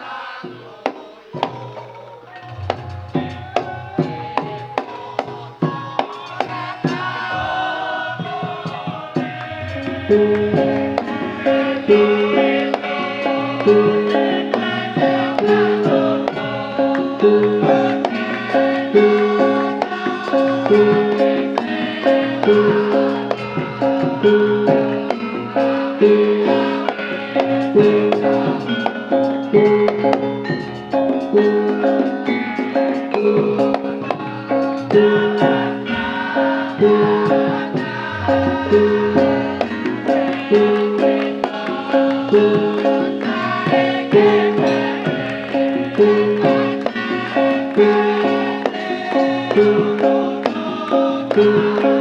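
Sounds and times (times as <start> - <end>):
metallophones ringing: 2.3 - 5.8, 9.2 - 52.0
drum strokes: 2.3 - 16.4, 35.0 - 45.6.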